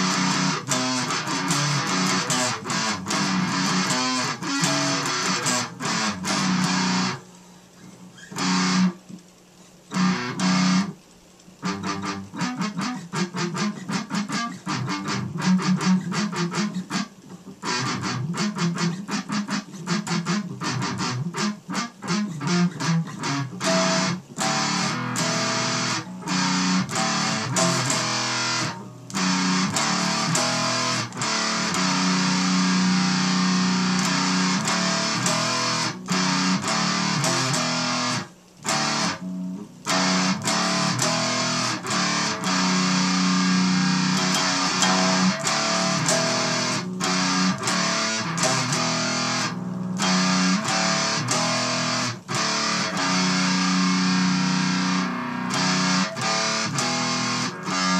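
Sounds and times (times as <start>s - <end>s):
distorted electric guitar chords: 0.0s - 57.9s.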